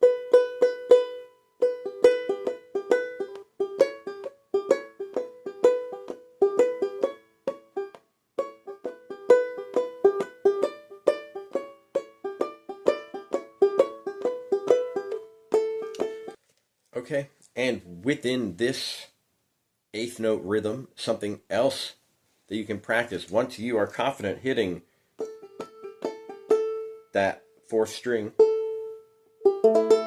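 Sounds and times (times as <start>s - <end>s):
banjolele plucked melody: 0.0s - 16.4s, 24.6s - 30.0s.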